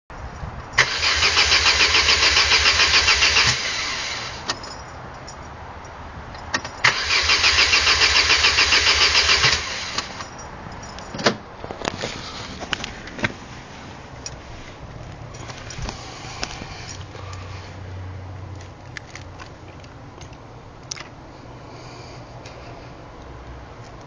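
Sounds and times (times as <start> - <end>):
starter motor cranking engine: 0.8 - 4.5, 6.8 - 10.2.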